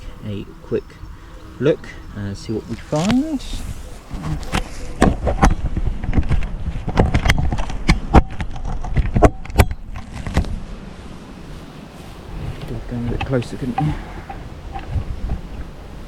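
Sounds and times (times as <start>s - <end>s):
knocks and clatter from hive: 4.1s - 10.6s, 12.6s - 15.5s.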